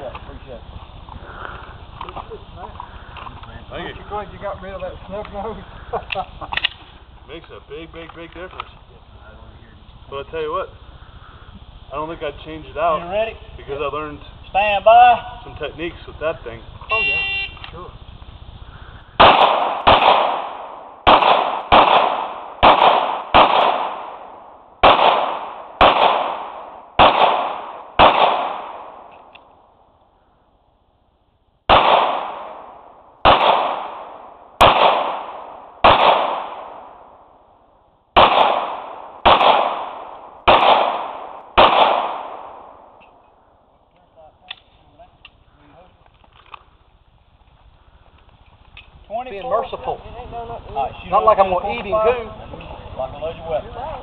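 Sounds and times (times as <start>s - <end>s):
pistol shots: 19.2s - 29.6s, 31.7s - 37.3s, 38.2s - 43.2s.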